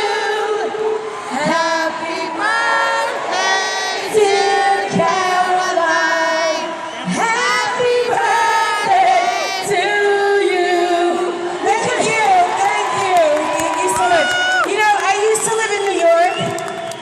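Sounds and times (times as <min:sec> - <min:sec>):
crowd singing along: 0:00.0 - 0:13.2
woman singing: 0:00.0 - 0:15.7.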